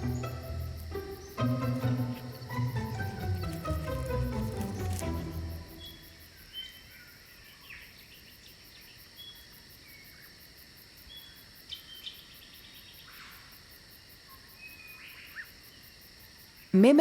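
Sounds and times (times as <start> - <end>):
steady high hiss: 0.0 - 6.4
insects pulsing chirr: 0.0 - 17.0.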